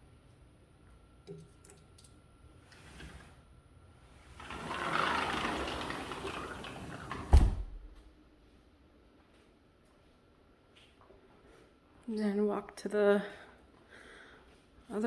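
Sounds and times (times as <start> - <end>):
door rolling along track: 2.7 - 3.4, 4.0 - 7.7
door stopping with thump: 4.5 - 8.0.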